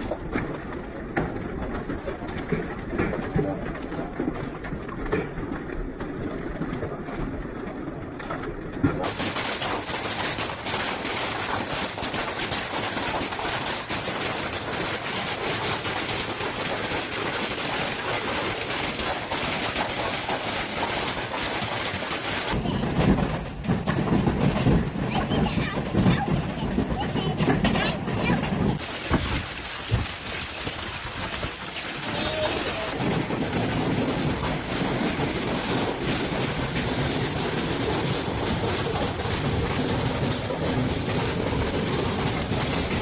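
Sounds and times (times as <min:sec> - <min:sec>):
hailstones clattering: 0:09.0 - 0:43.0.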